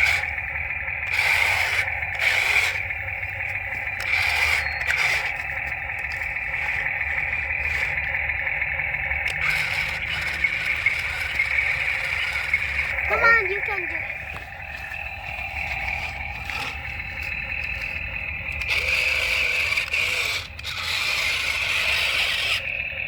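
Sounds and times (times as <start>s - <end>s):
small electric motors whining: 0.0s - 23.0s
digging scraping: 1.0s - 8.4s.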